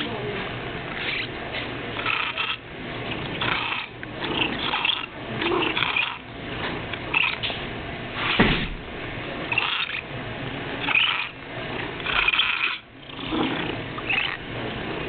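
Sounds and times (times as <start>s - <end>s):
cat vocalizing: 2.0s - 2.6s, 3.2s - 6.2s, 7.1s - 7.4s, 9.5s - 10.0s, 10.8s - 11.4s, 12.0s - 14.4s.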